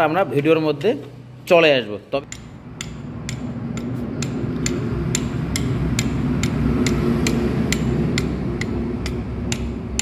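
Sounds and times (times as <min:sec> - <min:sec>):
low steady hum: 0:00.0 - 0:10.0
hammer tapping on metal: 0:02.2 - 0:10.0.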